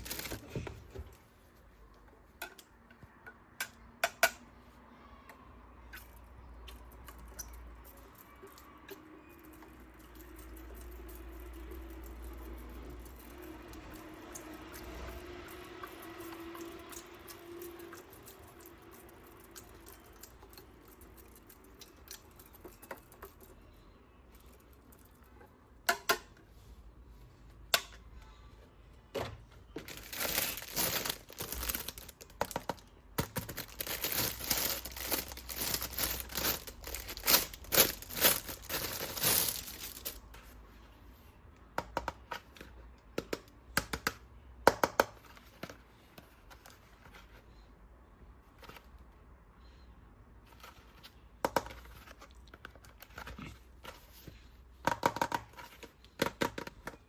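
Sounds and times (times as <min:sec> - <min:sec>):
packaging crinkling and tearing: 0:00.0 - 0:00.6, 0:29.8 - 0:40.2.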